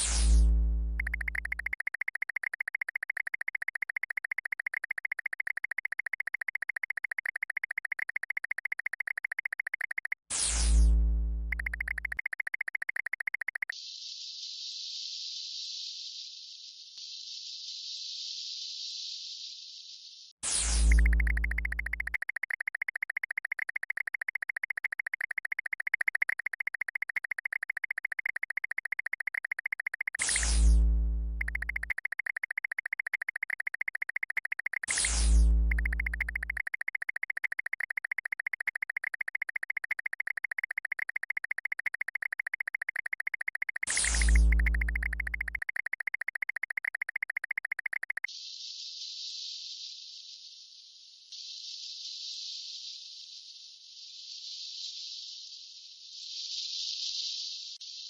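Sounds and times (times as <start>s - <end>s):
pulsing electronic buzz: 0.0s - 8.1s, 9.7s - 13.6s, 20.6s - 43.0s, 43.7s - 46.0s.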